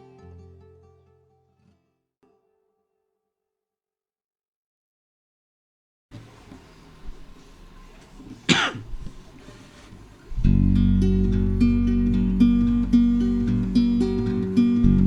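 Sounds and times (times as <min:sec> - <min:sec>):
low background hiss: 0:06.2 - 0:15.0
sharp cough-like noise: 0:08.4 - 0:09.2
strummed acoustic guitar: 0:10.3 - 0:15.0.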